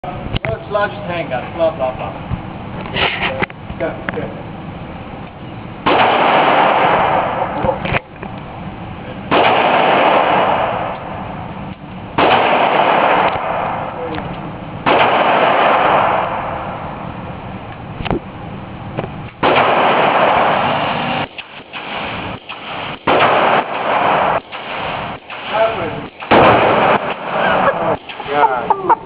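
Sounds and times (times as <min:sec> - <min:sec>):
revolver gunshots with rumble: 0:05.6 - 0:08.1, 0:09.2 - 0:28.6.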